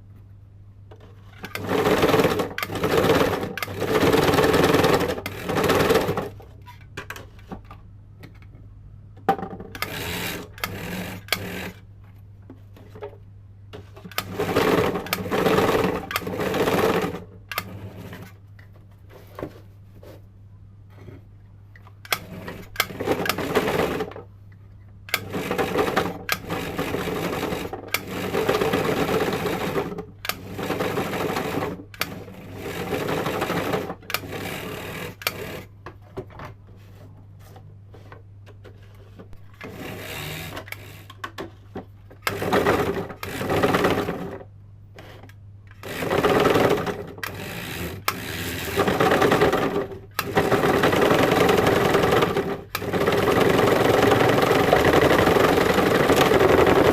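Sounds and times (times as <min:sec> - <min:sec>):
sewing machine motor spinning: 0:01.4 - 0:06.3, 0:09.8 - 0:11.8, 0:14.1 - 0:18.3, 0:22.1 - 0:24.1, 0:25.1 - 0:35.7, 0:39.6 - 0:41.2, 0:42.2 - 0:44.4, 0:45.8 - 0:56.9.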